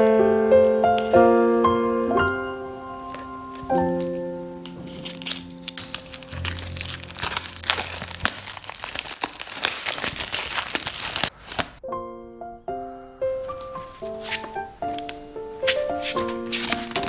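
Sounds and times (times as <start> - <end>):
soft piano music: 0.0 - 11.1, 11.8 - 17.0
packaging crinkling: 3.0 - 11.8, 13.4 - 17.0.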